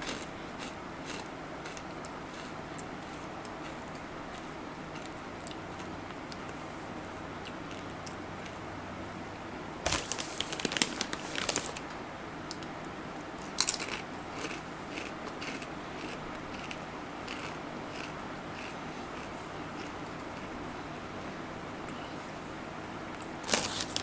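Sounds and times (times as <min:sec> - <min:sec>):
chips crinkling and crackling: 0:00.0 - 0:06.5, 0:09.8 - 0:12.0, 0:13.4 - 0:20.5, 0:23.2 - 0:24.0
chewing crunches: 0:00.0 - 0:06.6, 0:13.4 - 0:20.6, 0:23.2 - 0:24.0.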